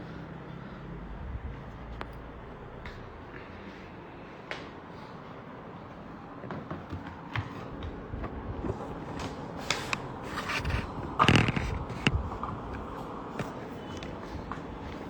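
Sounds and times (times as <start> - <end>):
rustling and scraping: 6.5 - 15.0.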